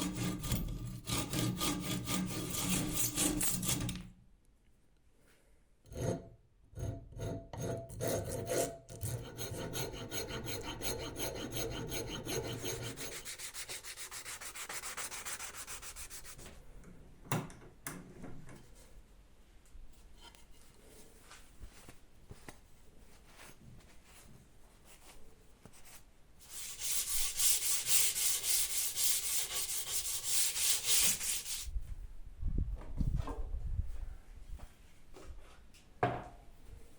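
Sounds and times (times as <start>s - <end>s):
sanding wooden handle by hand: 0.0s - 3.9s, 8.4s - 16.4s, 26.4s - 31.7s.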